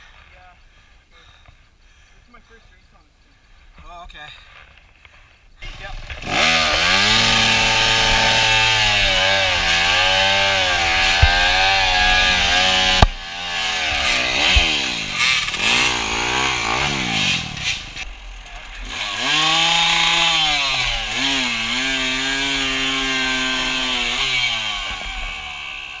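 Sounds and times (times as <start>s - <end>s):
motorcycle engine revving: 5.6s - 26.0s.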